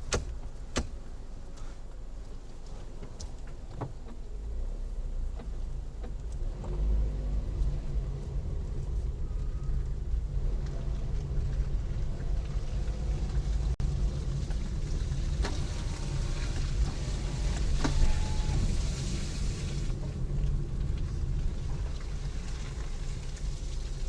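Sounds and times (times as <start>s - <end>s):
car road and engine rumble: 0.0s - 24.0s.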